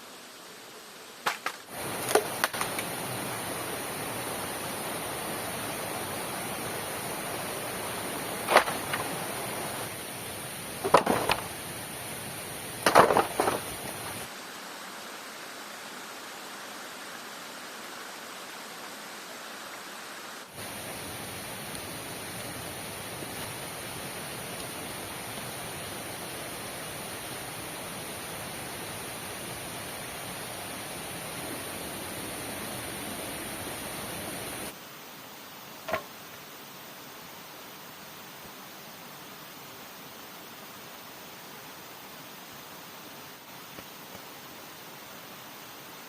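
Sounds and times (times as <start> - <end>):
rain hissing in forest: 0.0 - 46.0
sharp knocks or cracks: 1.2 - 2.8, 12.8 - 13.7.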